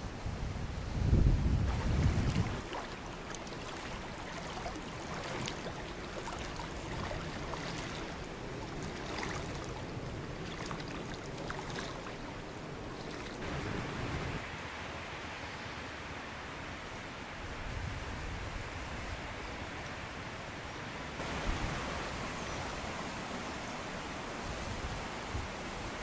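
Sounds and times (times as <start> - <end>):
wind buffeting microphone: 0.0 - 14.4
river rushing: 1.6 - 26.0.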